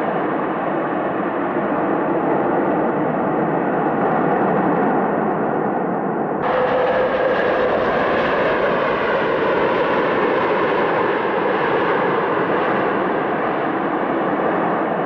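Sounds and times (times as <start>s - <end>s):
jet engines running: 6.4s - 15.0s.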